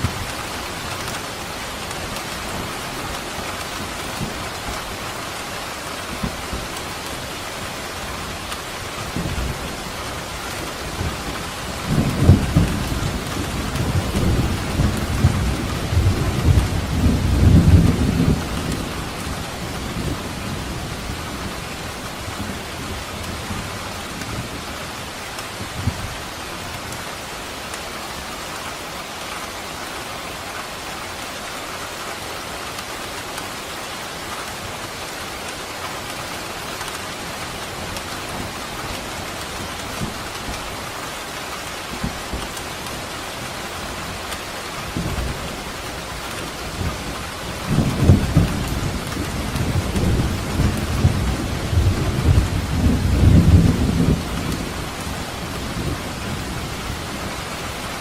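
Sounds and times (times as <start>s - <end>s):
heavy rain hiss: 0.0s - 58.0s
low rolling thunder: 10.8s - 24.6s, 44.8s - 58.0s.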